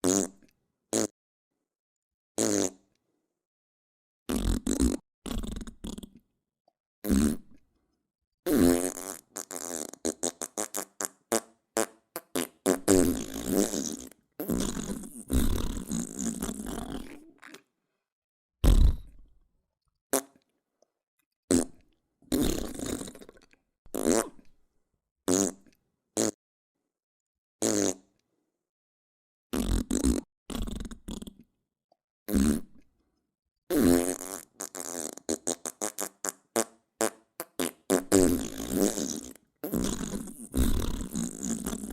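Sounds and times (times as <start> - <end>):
fart sound effects: 0.0 - 0.4, 2.4 - 2.8, 4.3 - 6.2, 7.0 - 7.6, 8.5 - 17.3, 18.6 - 19.2, 21.5 - 24.5, 25.3 - 25.6, 27.6 - 28.0, 29.5 - 31.4, 32.3 - 32.8, 33.7 - 41.9.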